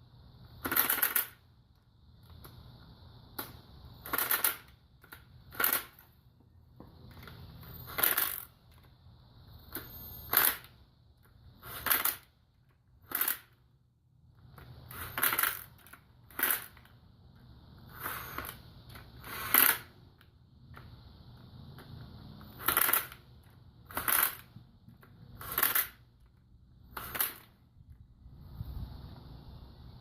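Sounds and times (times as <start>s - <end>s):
metal parts clinking: 7.1s - 8.9s, 9.7s - 10.8s, 12.9s - 13.6s, 14.9s - 16.9s, 22.5s - 27.7s.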